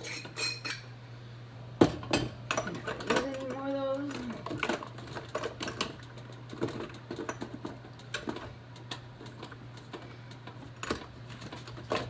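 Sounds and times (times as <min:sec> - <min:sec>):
kitchen utensils clicking and knocking: 0:01.9 - 0:10.0.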